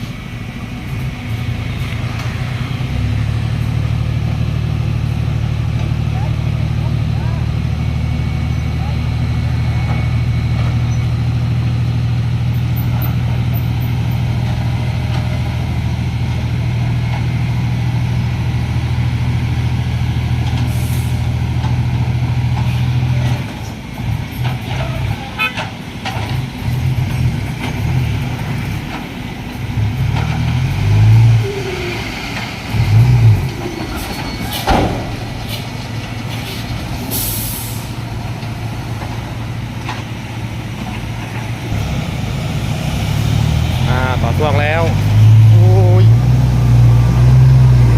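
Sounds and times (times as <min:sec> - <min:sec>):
diesel truck engine idling and revving: 0:00.0 - 0:47.9
air hiss: 0:36.5 - 0:38.0.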